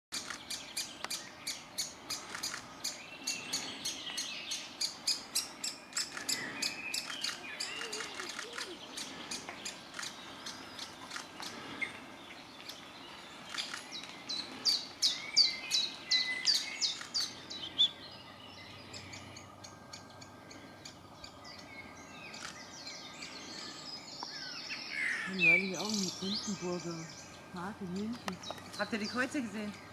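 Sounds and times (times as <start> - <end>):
woodpeckers calling: 0.2 - 29.9.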